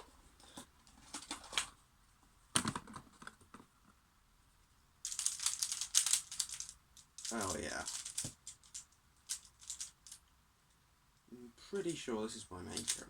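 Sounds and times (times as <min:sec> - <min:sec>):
plastic puzzle clicking: 0:05.1 - 0:10.2.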